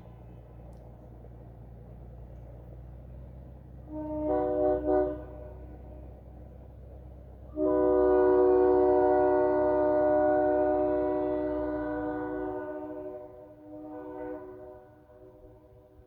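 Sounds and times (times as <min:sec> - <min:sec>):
train horn chord blasts: 0:03.9 - 0:06.0, 0:07.5 - 0:16.0.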